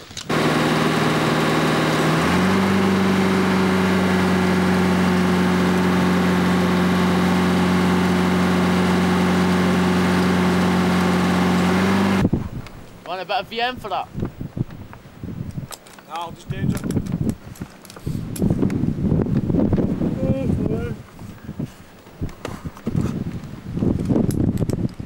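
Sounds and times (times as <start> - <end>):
engine running steadily: 0.2 - 12.3.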